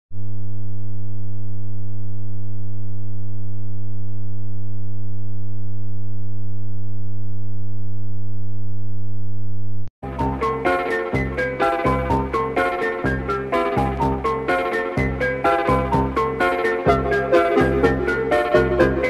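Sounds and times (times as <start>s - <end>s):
music: 10.0s - 19.0s.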